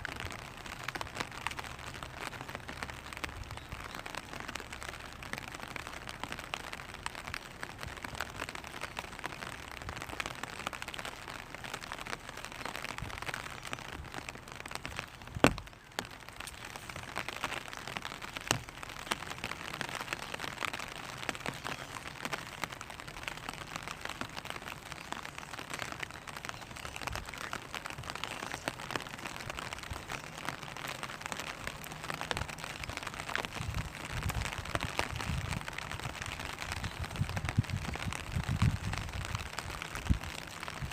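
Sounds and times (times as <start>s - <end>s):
rain on a plastic umbrella: 0.0s - 40.9s
sharp tap on umbrella: 15.3s - 17.1s.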